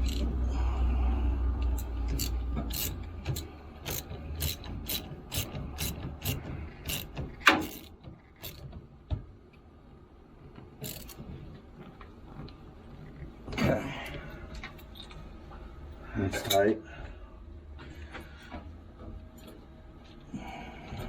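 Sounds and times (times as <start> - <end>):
ratchet wrench clicking: 0.0 - 0.3, 1.6 - 8.6, 10.8 - 11.2.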